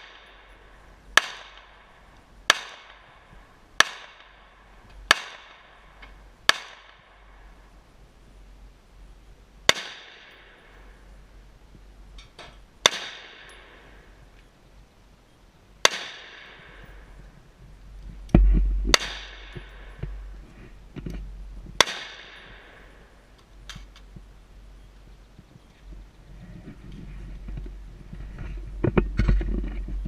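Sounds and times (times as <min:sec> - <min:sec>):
rifle shots with echo: 0:09.7 - 0:10.5, 0:12.8 - 0:13.7, 0:15.8 - 0:16.8, 0:18.4 - 0:20.3, 0:21.8 - 0:22.9
low rumble: 0:17.0 - 0:21.8.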